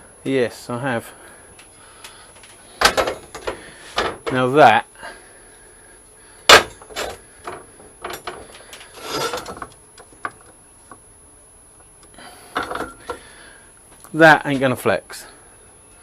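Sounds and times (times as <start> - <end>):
metal parts and tools clattering: 2.3 - 4.4, 6.5 - 9.8, 12.5 - 13.2
scraping rustle: 6.9 - 9.8.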